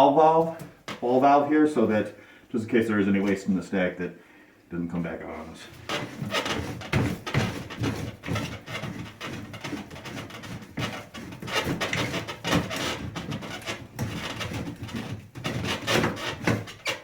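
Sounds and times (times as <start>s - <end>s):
pipe knocking and scraping: 5.7s - 17.0s.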